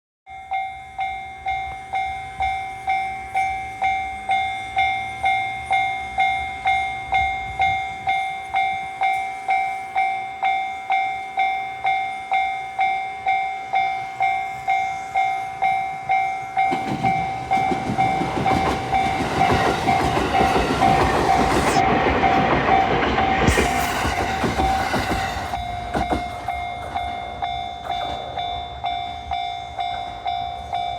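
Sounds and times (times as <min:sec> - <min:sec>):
train passing rumble: 0:00.9 - 0:30.9
level crossing bell ringing: 0:24.4 - 0:30.9.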